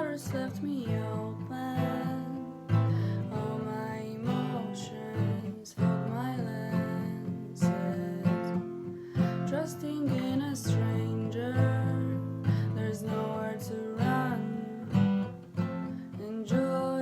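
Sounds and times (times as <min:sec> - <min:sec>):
acoustic guitar strumming: 0:00.0 - 0:17.0.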